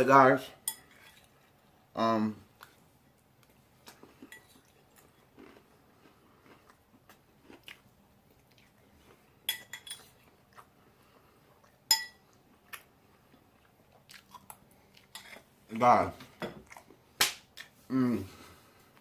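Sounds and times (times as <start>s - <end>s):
chewing: 3.4s - 9.3s, 10.0s - 15.5s
fork clinking against a bowl: 9.5s - 10.1s, 11.9s - 12.2s.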